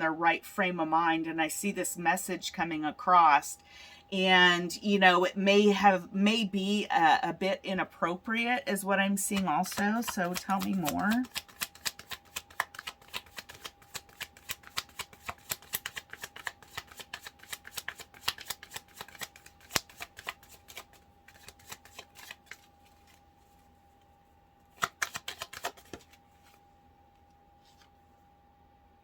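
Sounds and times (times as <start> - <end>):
cards being shuffled: 9.3 - 23.7, 24.6 - 26.6, 27.6 - 28.0
card snaps: 24.8 - 26.2.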